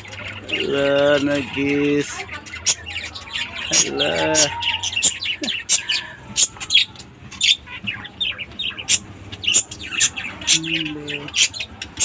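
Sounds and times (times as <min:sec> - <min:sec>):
lovebirds chirping: 0:00.0 - 0:12.0.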